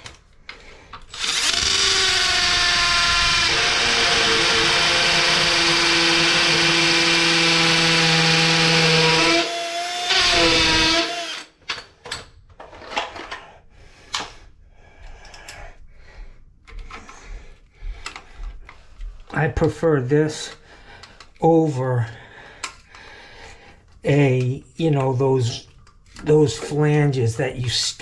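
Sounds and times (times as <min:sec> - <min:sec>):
clicks and knocks of tools: 0:00.0 - 0:01.1, 0:11.4 - 0:13.5, 0:18.0 - 0:19.8, 0:20.4 - 0:21.4
electric drill running: 0:01.1 - 0:11.5.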